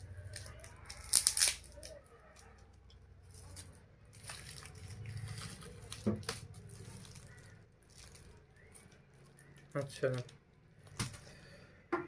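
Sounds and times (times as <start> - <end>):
packaging rustling and crinkling: 3.2 - 11.3.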